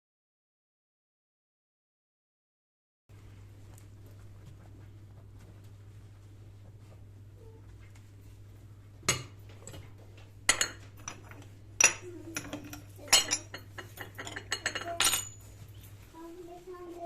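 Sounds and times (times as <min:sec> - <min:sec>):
low steady hum: 0:03.1 - 0:17.0
tableware clinking and clattering: 0:09.0 - 0:15.7.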